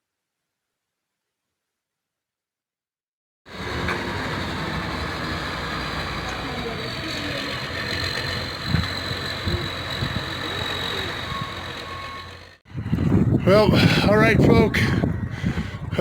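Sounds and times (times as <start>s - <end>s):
truck engine rumbling: 3.5s - 16.0s.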